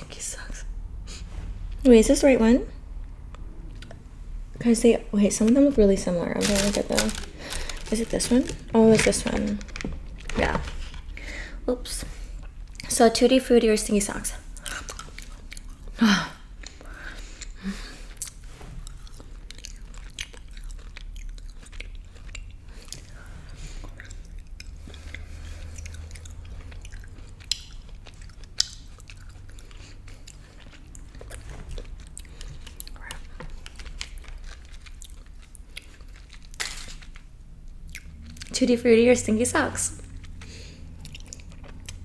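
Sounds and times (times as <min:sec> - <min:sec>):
chewing with wet mouth sounds: 0:03.1 - 0:04.1, 0:12.0 - 0:13.5, 0:14.4 - 0:38.7, 0:40.0 - 0:42.0.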